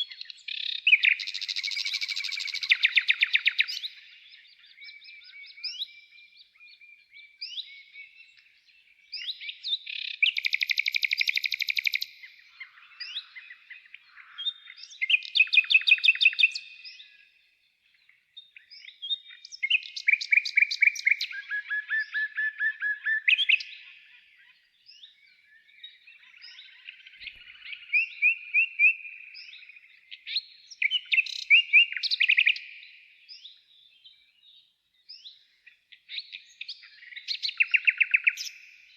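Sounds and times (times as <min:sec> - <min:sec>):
songbird chirps and trills: 0:00.0 - 0:38.9.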